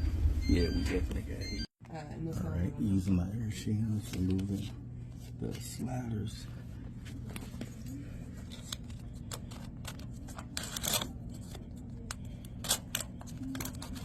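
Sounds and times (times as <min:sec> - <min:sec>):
rustling and scraping handling noise: 0:03.9 - 0:14.0.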